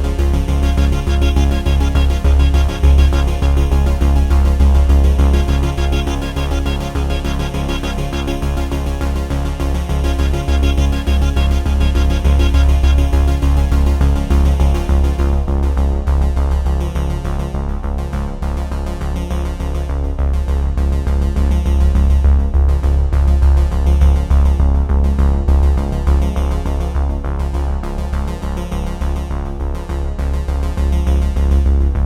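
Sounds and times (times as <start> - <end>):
electronic music with heavy bass: 0.0 - 18.1.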